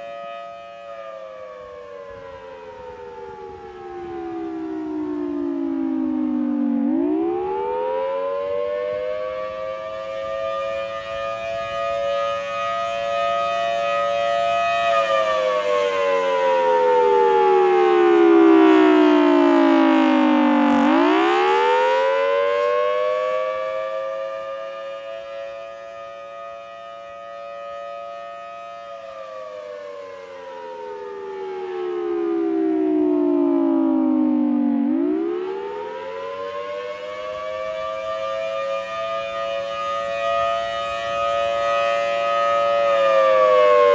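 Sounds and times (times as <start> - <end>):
warning siren rising and falling: 0.0 - 43.9.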